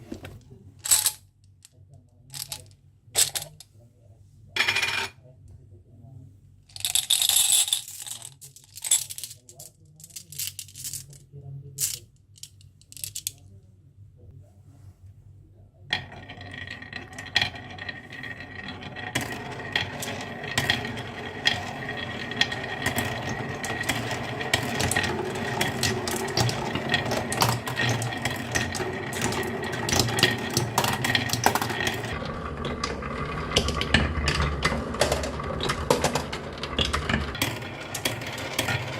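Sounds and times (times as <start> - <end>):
marbles clicking on a track: 16.0 - 38.9.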